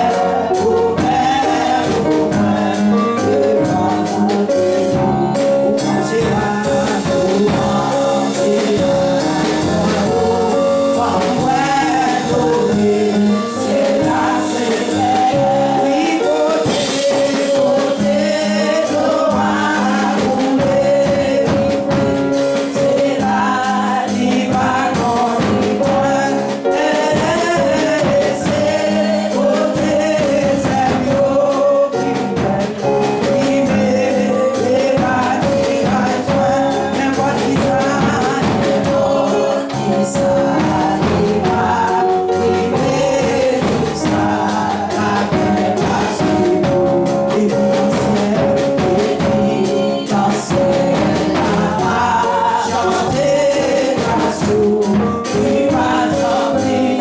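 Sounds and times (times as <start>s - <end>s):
backing band: 0.0s - 57.0s
gospel choir singing: 0.0s - 57.0s
steady drum beat: 0.0s - 57.0s.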